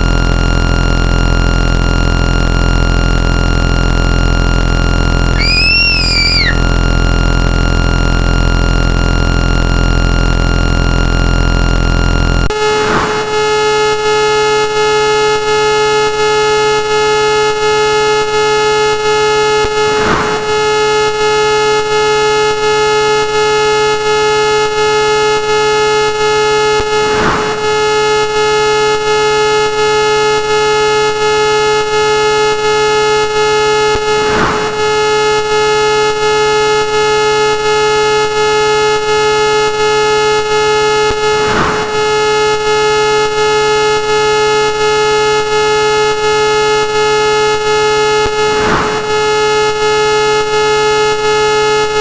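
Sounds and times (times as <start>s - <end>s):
distorted electronic noise: 0.0s - 21.1s
electronic sweep: 0.2s - 12.0s.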